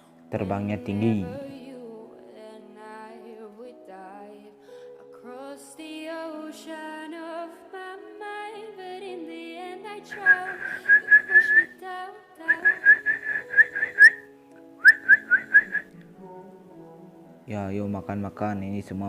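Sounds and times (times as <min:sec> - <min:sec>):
background music: 0:00.0 - 0:19.0
sharp whistled chirps: 0:10.1 - 0:11.8, 0:12.5 - 0:14.2, 0:14.8 - 0:15.9.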